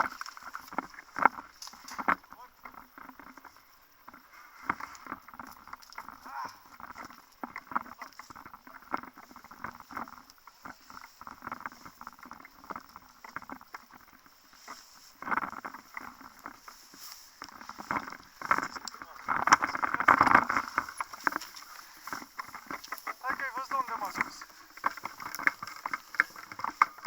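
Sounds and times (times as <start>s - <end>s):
clothing rustling: 14.2s - 27.0s.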